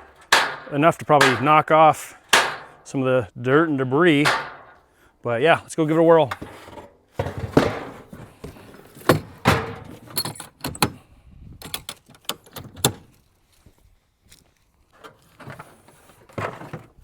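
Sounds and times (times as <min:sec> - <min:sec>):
handling knocks and rattles: 0:00.0 - 0:02.9, 0:04.2 - 0:04.9, 0:05.9 - 0:11.0, 0:15.0 - 0:17.0.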